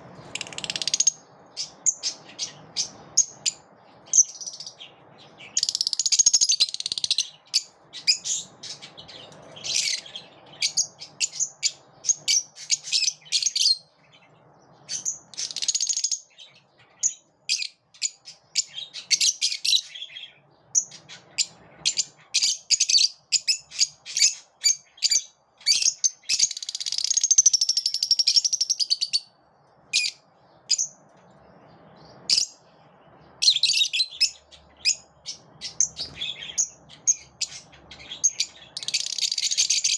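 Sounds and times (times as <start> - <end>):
lovebirds chirping: 0.0 - 39.9.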